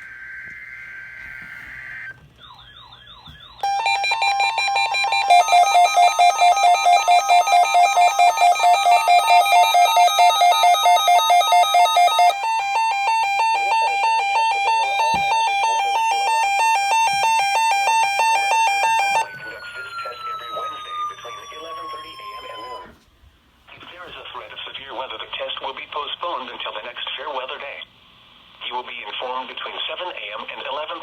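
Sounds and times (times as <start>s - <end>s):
rapid pulsing beeps: 0.0s - 22.9s
tone sweeping up and down: 0.0s - 23.0s
warbling alert tone: 0.0s - 23.0s.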